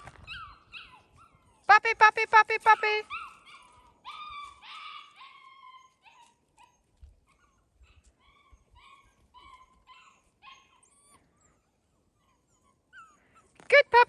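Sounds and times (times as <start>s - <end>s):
puppies whining and yipping: 0.0s - 1.7s, 3.0s - 13.6s.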